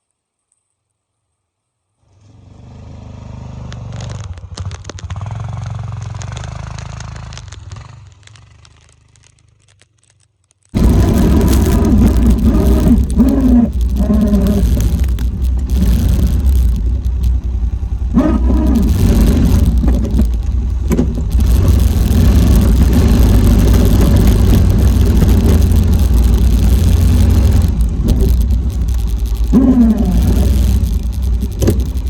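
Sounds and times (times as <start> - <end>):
four-wheeler engine revving under load: 2.1 - 4.3, 10.8 - 32.0.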